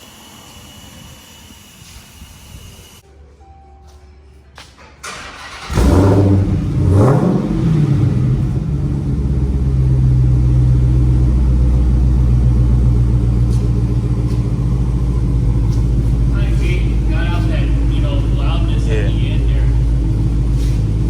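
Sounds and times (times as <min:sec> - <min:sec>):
car engine revving and idling: 0:05.3 - 0:21.0.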